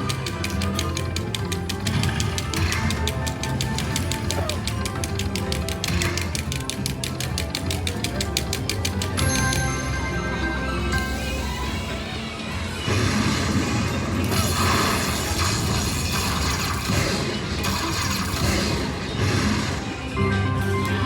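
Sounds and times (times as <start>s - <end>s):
slot machine game music: 0.0s - 21.0s
crashing and booming effects: 12.8s - 20.2s.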